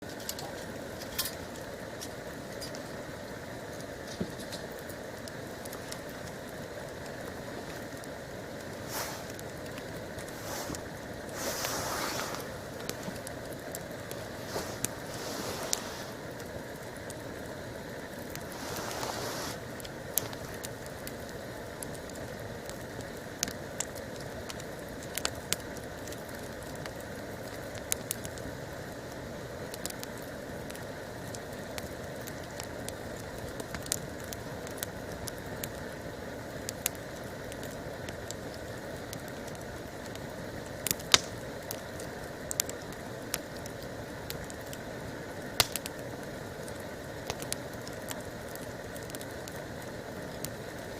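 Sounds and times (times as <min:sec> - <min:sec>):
campfire crackling and popping: 0:00.0 - 0:50.9
steady background hiss: 0:00.0 - 0:50.9.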